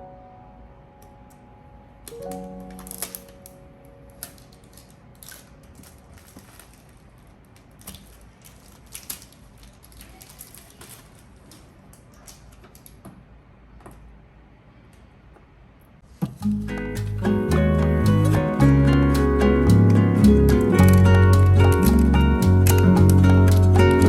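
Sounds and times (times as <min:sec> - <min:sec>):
objects handled clicking: 0:02.1 - 0:03.6, 0:04.2 - 0:13.2, 0:19.0 - 0:24.0.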